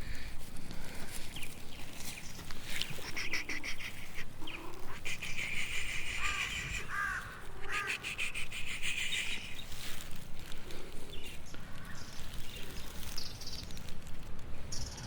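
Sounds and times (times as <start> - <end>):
high-pitched wildlife chattering: 2.6 - 9.8
rising and falling animal calls: 2.9 - 9.6.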